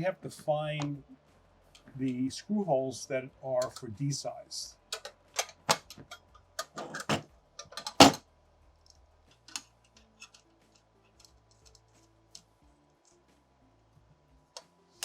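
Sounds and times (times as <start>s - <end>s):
metal hardware clicking and clinking: 4.9s - 8.2s, 9.3s - 11.9s.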